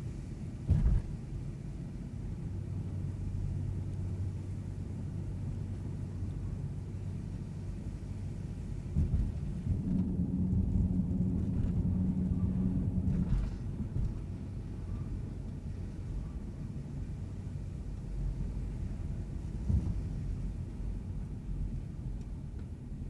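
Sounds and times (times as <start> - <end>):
road rumble: 0.0 - 23.0
short knock: 0.7 - 1.2
truck engine hum: 7.8 - 17.0.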